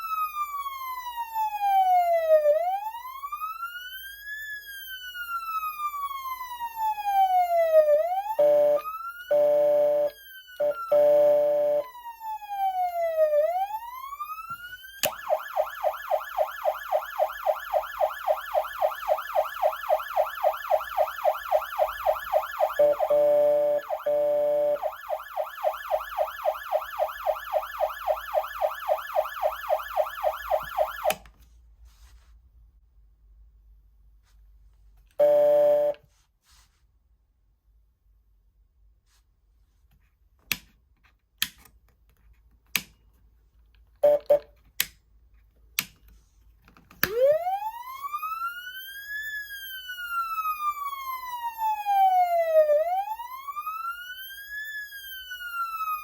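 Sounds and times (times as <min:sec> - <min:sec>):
fast siren yelp: 0:00.0 - 0:31.2, 0:47.1 - 0:56.0
siren wail: 0:00.0 - 0:31.2, 0:47.0 - 0:56.0
siren horn blasts: 0:07.1 - 0:11.9, 0:15.0 - 0:31.2, 0:35.2 - 0:36.0.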